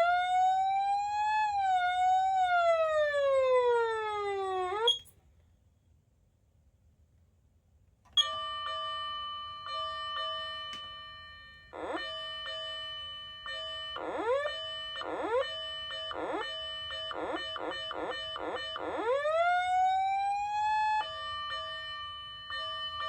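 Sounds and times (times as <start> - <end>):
rising siren sweeps: 13.9 - 22.0.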